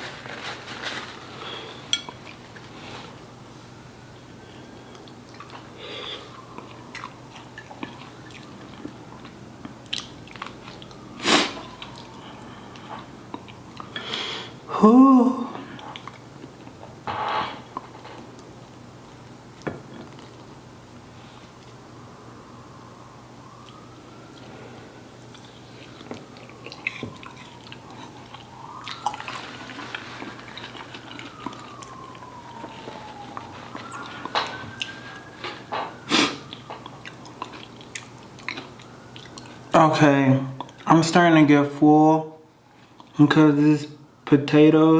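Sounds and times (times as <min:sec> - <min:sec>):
siren wailing: 0:03.7 - 0:16.2, 0:20.6 - 0:41.4
close chewing with mouth clicks: 0:06.3 - 0:14.2, 0:15.7 - 0:16.8, 0:25.2 - 0:35.3, 0:36.2 - 0:39.7, 0:40.6 - 0:40.9
person chewing and biting: 0:25.3 - 0:32.0, 0:36.4 - 0:39.5.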